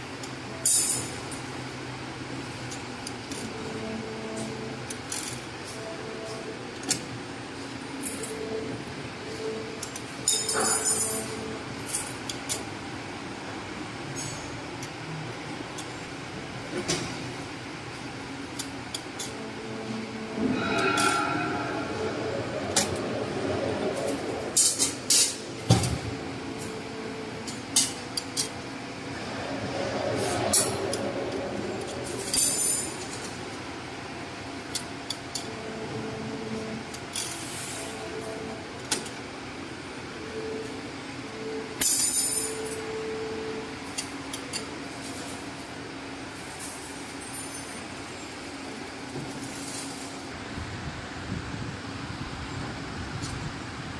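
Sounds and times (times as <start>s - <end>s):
machine motor whine: 19.1s - 33.8s.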